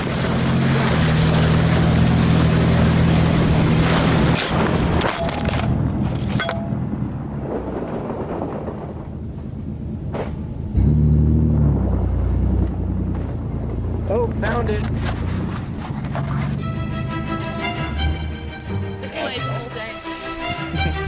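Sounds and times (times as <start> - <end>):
vehicle engine running: 0.0 - 21.0
wind and driving noise: 0.0 - 21.0
sharp knocks and clatter: 10.1 - 11.0.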